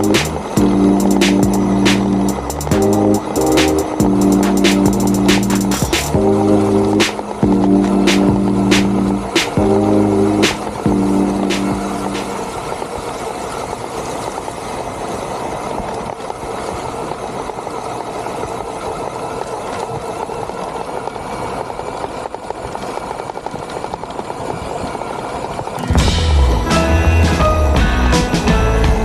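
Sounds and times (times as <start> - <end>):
toy car motor and gears running: 0.0 - 25.8
tyres rolling over ground: 0.0 - 29.0.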